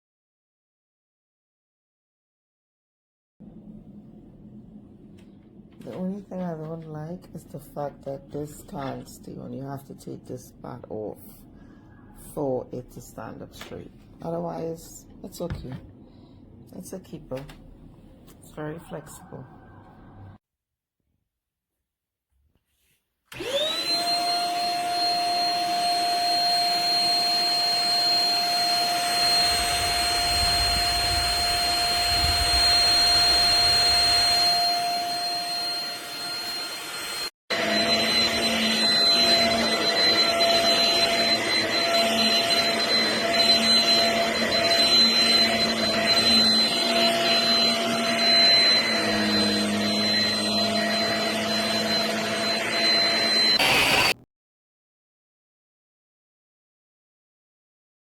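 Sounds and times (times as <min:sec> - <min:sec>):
vacuum cleaner motor whining: 0:23.3 - 0:54.2.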